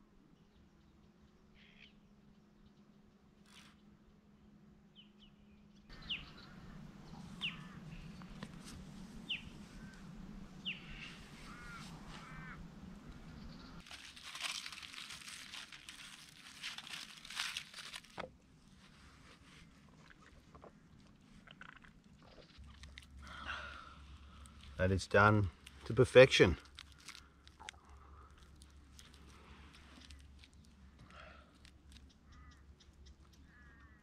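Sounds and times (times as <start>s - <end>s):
bird chirps: 4.9s - 8.4s, 9.3s - 10.0s, 10.6s - 12.6s
birds whistling falling notes: 6.0s - 8.4s
dense crackling noise: 6.6s - 33.5s.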